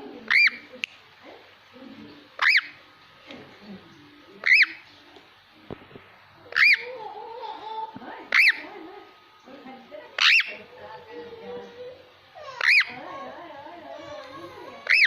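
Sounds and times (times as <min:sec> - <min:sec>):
parrot calls: 0:00.2 - 0:00.7, 0:02.4 - 0:02.8, 0:04.4 - 0:04.8, 0:06.4 - 0:08.7, 0:10.2 - 0:10.7, 0:12.3 - 0:13.3, 0:14.6 - 0:15.0.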